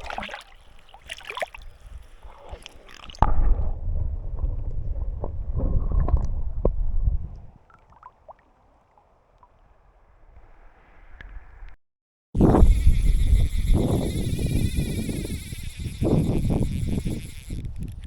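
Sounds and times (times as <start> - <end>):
muffled underwater rumbling and gurgling: 1.7 - 7.5.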